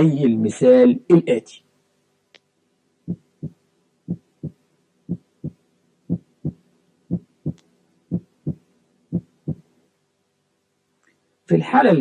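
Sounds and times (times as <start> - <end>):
heartbeat through stethoscope: 3.1 - 9.6.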